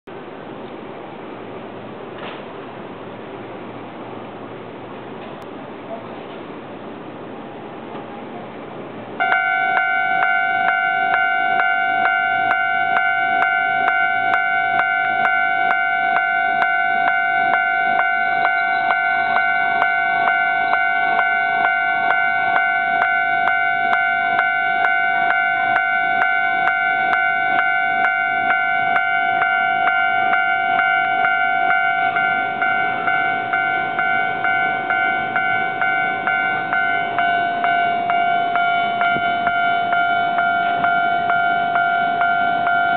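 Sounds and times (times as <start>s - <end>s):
level-crossing warning bell: 9.2s - 42.9s.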